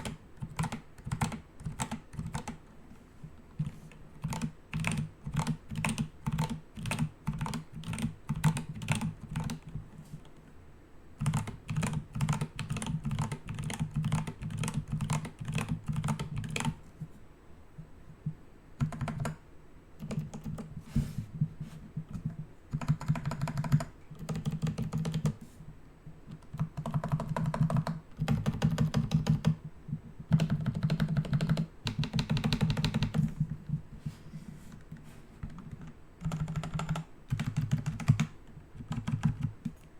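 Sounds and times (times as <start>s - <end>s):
typing on computer keyboard: 0.0s - 2.7s, 3.6s - 10.4s, 11.2s - 16.8s, 18.8s - 19.4s, 20.0s - 20.7s, 22.1s - 25.4s, 26.3s - 29.6s, 30.2s - 33.5s, 34.8s - 39.9s.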